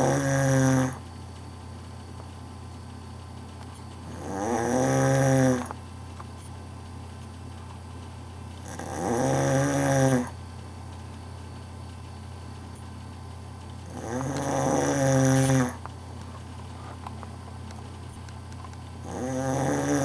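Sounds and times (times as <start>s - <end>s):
man snoring: 0.0s - 1.0s, 4.0s - 5.8s, 8.6s - 10.4s, 13.8s - 15.9s, 19.0s - 20.0s.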